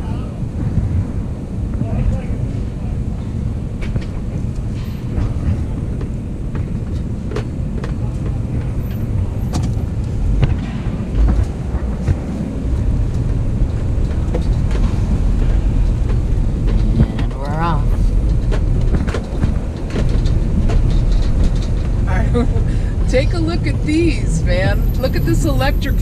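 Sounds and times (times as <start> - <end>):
vehicle deep rumble: 0.0 - 26.0
scrap load knocks and rattles: 3.8 - 22.7.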